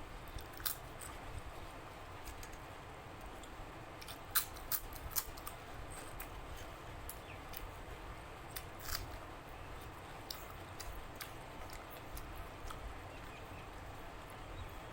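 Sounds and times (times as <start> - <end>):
low steady hiss: 0.0 - 14.9
person chewing food: 3.4 - 13.4.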